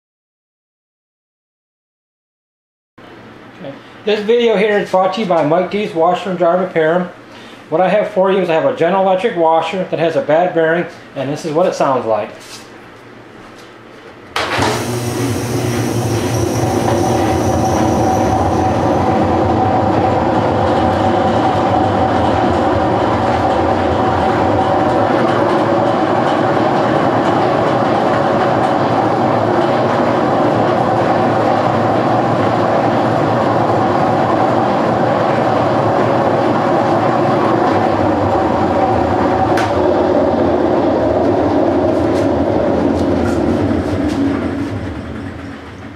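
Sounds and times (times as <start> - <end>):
washing machine running with whine: 14.2 - 45.9.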